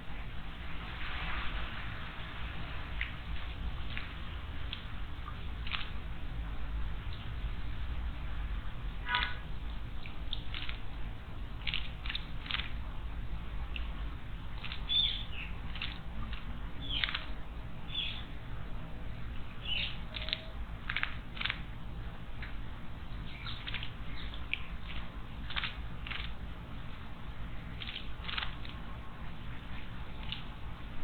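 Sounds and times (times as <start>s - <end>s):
steady low rumble: 0.0s - 31.0s
songbirds chirping: 13.7s - 31.0s.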